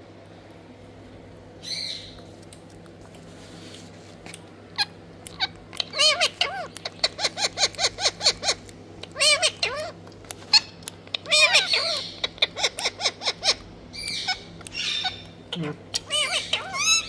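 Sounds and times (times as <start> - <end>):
parakeet squawking: 1.6 - 2.2, 4.8 - 17.0.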